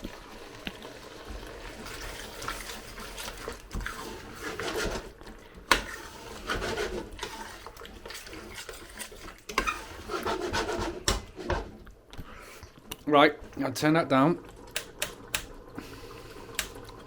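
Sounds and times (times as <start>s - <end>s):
utensil scraping a pan: 1.6s - 11.9s.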